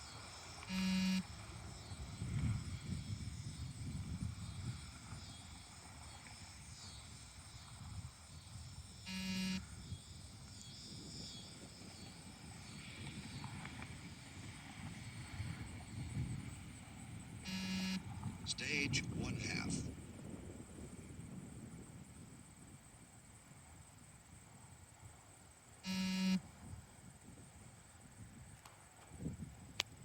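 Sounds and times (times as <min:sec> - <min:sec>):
short electronic beep: 0:00.7 - 0:01.2, 0:09.1 - 0:09.6, 0:17.5 - 0:18.0, 0:25.9 - 0:26.4.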